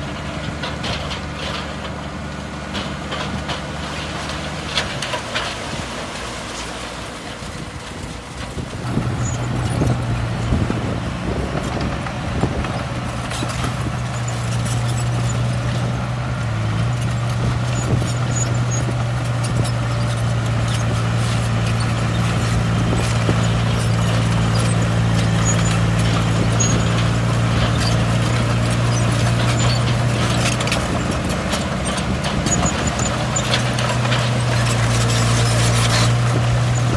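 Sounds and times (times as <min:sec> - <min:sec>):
bulldozer diesel engine working: 0:00.0 - 0:36.9
clanking steel tracks and blade: 0:18.1 - 0:36.8.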